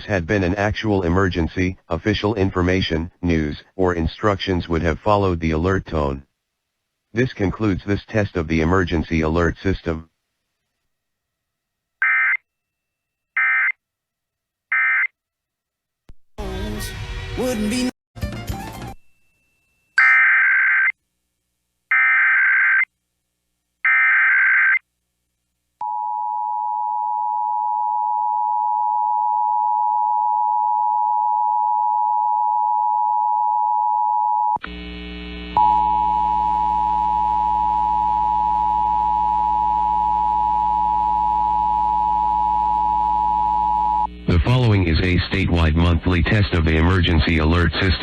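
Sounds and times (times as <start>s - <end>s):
low buzz with overtones: 34.6s - 41.4s.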